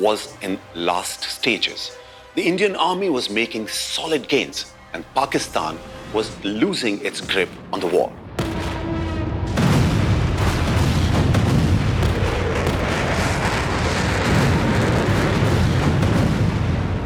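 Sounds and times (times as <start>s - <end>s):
rumble of explosions with crackling: 8.2s - 17.0s.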